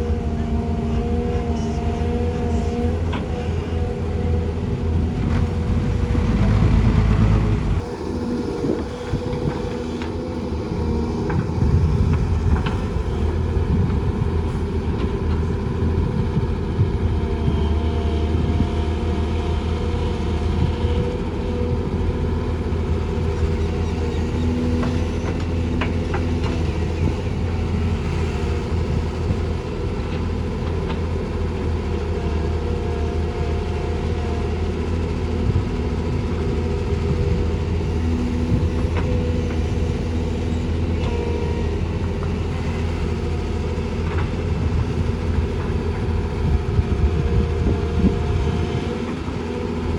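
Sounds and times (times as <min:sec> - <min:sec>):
diesel engines droning: 0:00.0 - 0:49.9.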